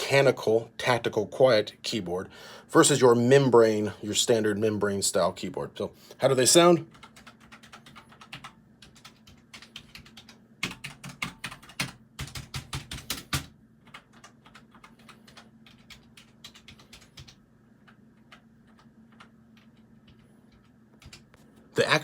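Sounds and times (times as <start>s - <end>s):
typing on computer keyboard: 6.9s - 21.4s.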